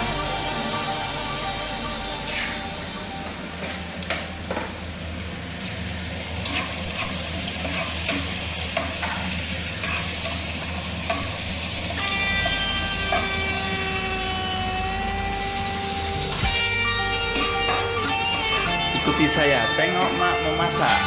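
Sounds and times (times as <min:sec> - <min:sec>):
food sizzling in hot oil: 0:00.0 - 0:16.7.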